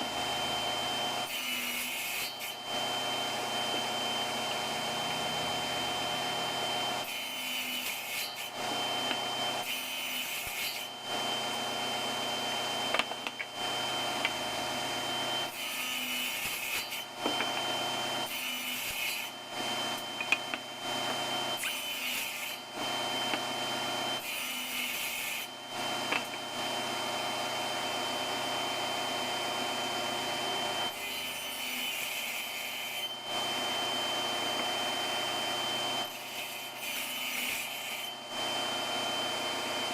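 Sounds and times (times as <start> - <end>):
table saw whining: 0.0 - 39.9
saw blade cutting wood: 1.2 - 2.6, 7.0 - 11.6, 15.4 - 23.5, 24.2 - 26.4, 36.0 - 38.2.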